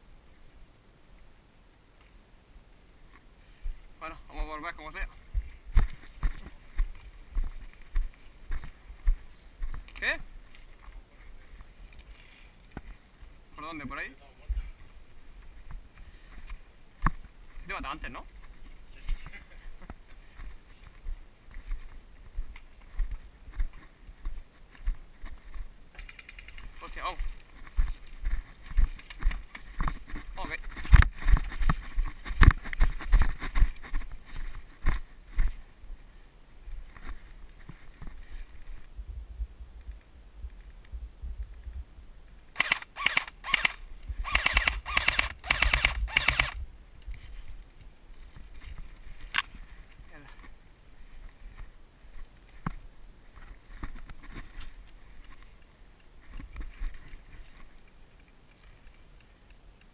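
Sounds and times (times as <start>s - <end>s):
footsteps on rough ground: 3.0s - 59.9s
gear clicks and handling noise: 24.7s - 35.6s, 39.8s - 50.5s, 53.4s - 59.9s
airsoft gun firing bursts: 42.6s - 46.6s.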